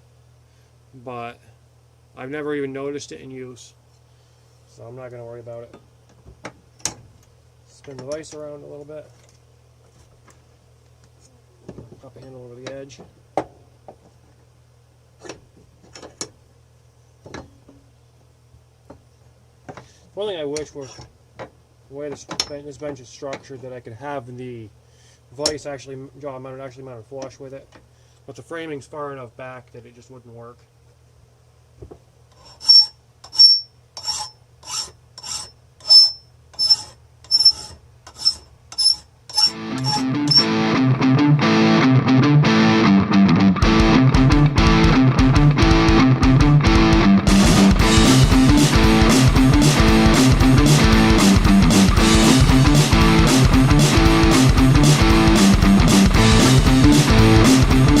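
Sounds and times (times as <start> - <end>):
faint hum: 0.0 - 41.4
file scraping steel: 32.3 - 40.5
electric guitar music: 39.5 - 58.0.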